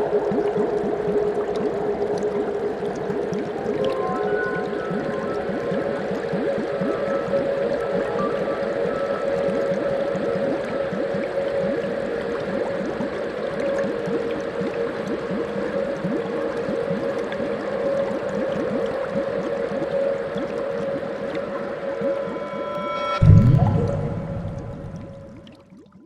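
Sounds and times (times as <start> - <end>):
water bubbling and gurgling: 0.0 - 26.0
steady hum of held tones: 15.4 - 25.4.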